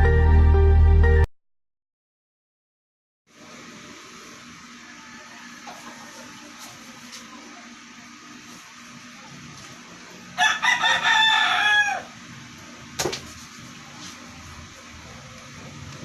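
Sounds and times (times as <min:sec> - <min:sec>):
rooster crowing: 0:04.6 - 0:06.8, 0:10.3 - 0:12.4.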